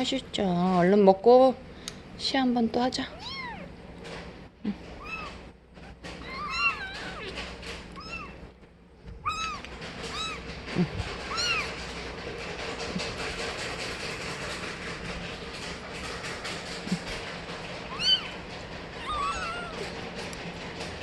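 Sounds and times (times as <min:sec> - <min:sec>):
kittens mewing: 0:04.6 - 0:08.5, 0:09.2 - 0:11.9, 0:17.8 - 0:20.0.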